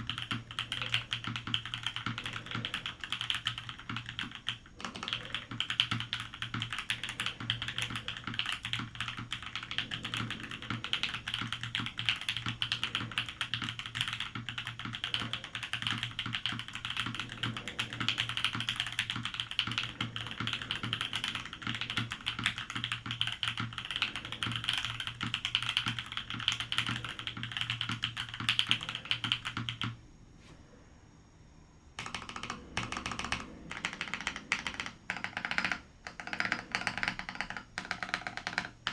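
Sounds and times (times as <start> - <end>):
mechanical keyboard typing: 0.0 - 30.0, 32.0 - 38.9.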